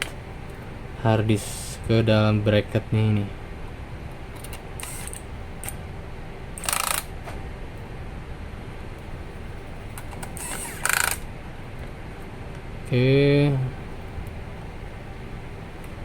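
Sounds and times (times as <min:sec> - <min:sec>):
steady low hum: 0:00.0 - 0:16.0
screwdriver scraping metal: 0:04.8 - 0:05.2.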